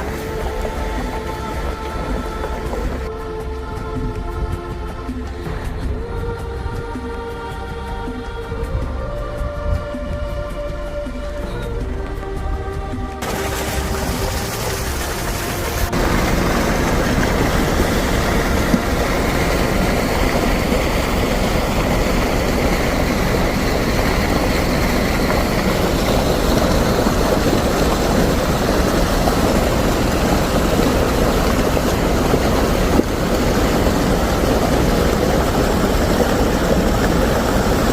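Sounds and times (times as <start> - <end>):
vehicle engine and road noise: 0.0 - 37.9.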